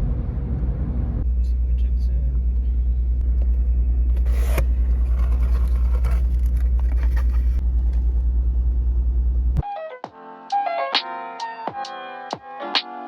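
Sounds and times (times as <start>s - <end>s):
car engine running: 0.0s - 9.6s.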